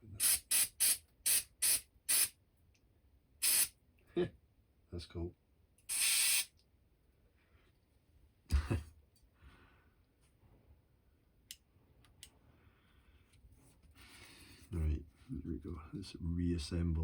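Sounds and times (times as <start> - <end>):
spray hissing: 0.2 - 2.3, 3.4 - 3.7, 5.9 - 6.5.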